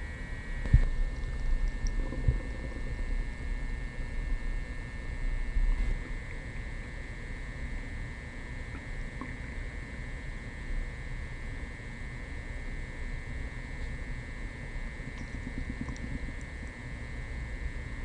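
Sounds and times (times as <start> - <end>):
stomach gurgling: 0.6 - 4.8, 8.6 - 9.7, 14.9 - 16.9.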